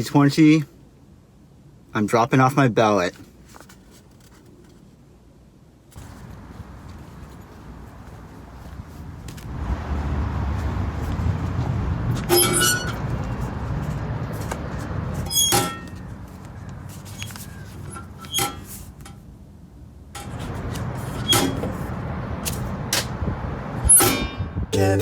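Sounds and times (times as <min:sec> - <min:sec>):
traffic rumble: 0:03.1 - 0:25.0
squeaky clatters: 0:12.2 - 0:13.1, 0:15.2 - 0:16.1.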